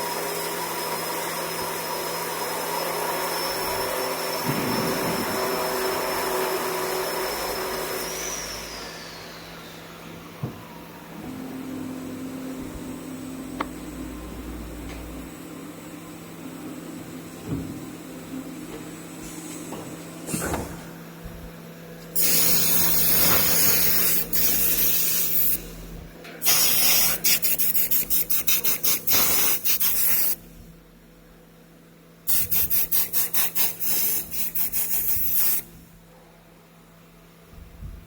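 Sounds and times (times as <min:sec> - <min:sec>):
loud machine hissing: 0:00.0 - 0:10.2, 0:22.2 - 0:30.4, 0:32.3 - 0:35.8
low machine hum: 0:03.7 - 0:23.2.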